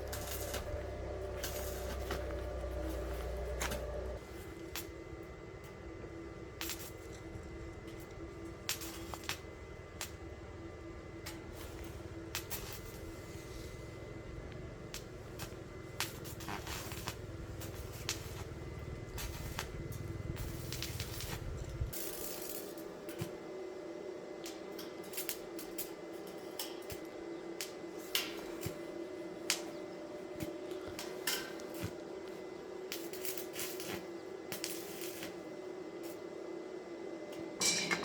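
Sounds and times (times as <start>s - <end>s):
steady hum: 0.0s - 38.0s.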